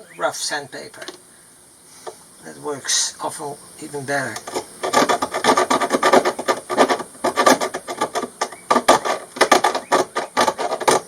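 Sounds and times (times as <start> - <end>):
metal rasping strokes: 4.4 - 11.0.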